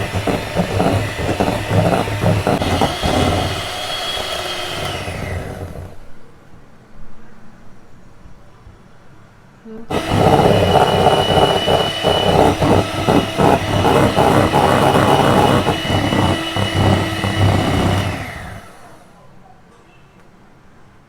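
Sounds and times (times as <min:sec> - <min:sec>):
hand mixer motor whine: 0:00.0 - 0:06.1, 0:09.9 - 0:19.1.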